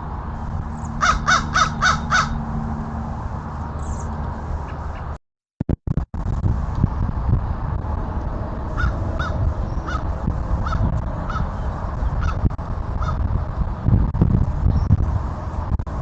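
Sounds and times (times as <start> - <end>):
steady low rumble: 0.0 - 16.0
bird calling: 0.9 - 2.4, 8.8 - 12.4.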